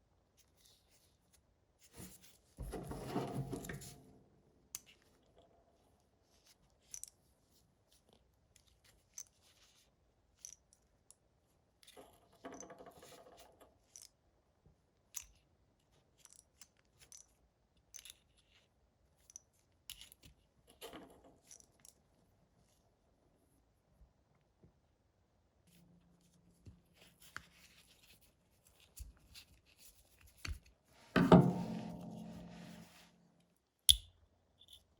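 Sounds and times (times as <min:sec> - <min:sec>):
scraping on metal: 0:02.6 - 0:04.1.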